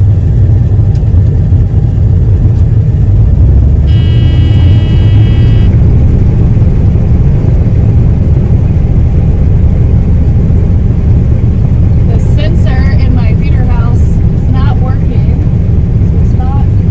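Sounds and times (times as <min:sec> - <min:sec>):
combine harvester droning: 0:00.0 - 0:16.9
high-pitched steady tone: 0:03.8 - 0:08.7.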